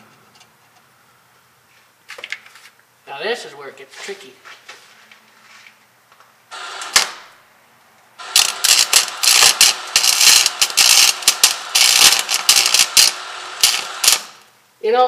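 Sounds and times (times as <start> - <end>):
welder arc crackling and popping: 6.5 - 7.4, 8.2 - 14.6.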